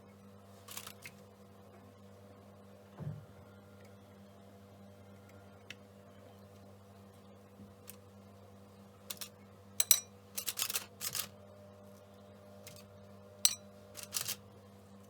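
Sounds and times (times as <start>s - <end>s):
glass or crockery clinking: 9.8s - 10.7s, 13.5s - 14.2s.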